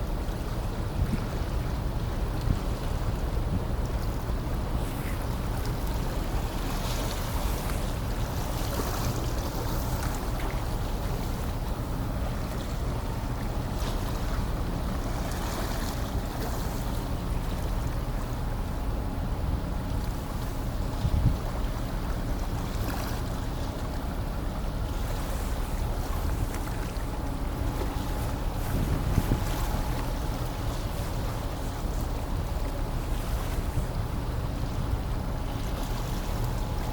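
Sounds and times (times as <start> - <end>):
ferry engine low rumble: 0.0 - 36.9
wind buffeting microphone: 20.8 - 21.6, 24.8 - 35.4.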